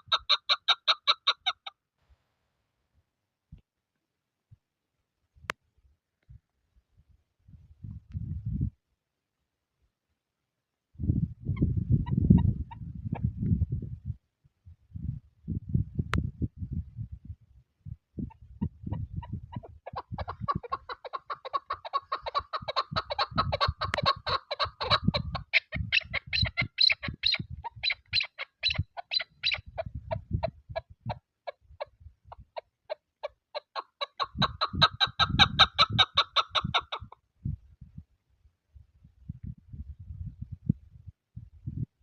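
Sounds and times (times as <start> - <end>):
wind buffeting microphone: 7.0 - 8.8, 10.9 - 32.5, 34.3 - 42.0
partridge calling chuck notes: 19.3 - 29.7.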